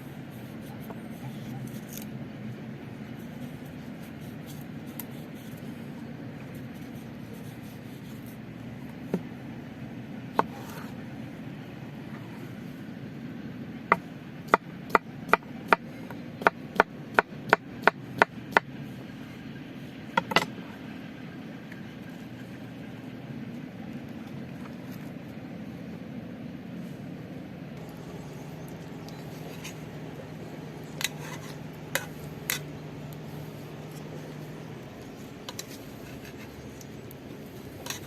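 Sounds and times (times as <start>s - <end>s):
steady low background sound: 26.4s - 38.0s.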